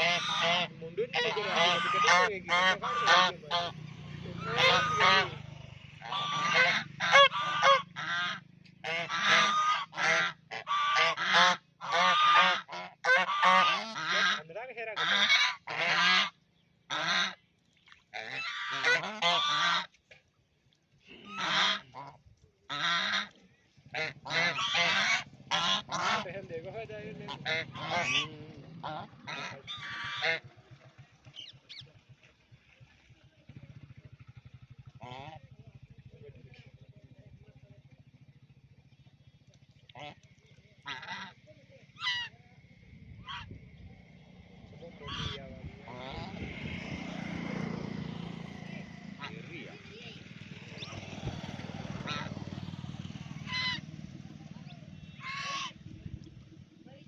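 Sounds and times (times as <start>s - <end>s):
waterfowl honking: 0.0s - 20.1s, 21.1s - 32.4s, 34.3s - 35.6s, 39.5s - 43.8s, 44.8s - 47.7s, 48.6s - 56.0s.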